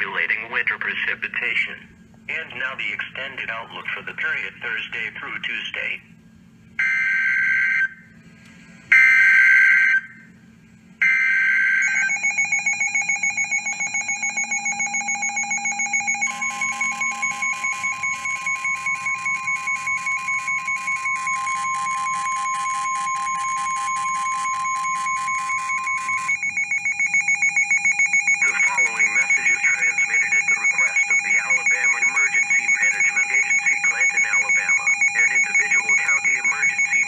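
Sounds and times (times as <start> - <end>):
pulsing two-tone alarm beep: 8.9 - 10.2, 11.0 - 37.0
steady warning tone: 11.0 - 37.0
screechy digital data bursts: 11.8 - 37.0.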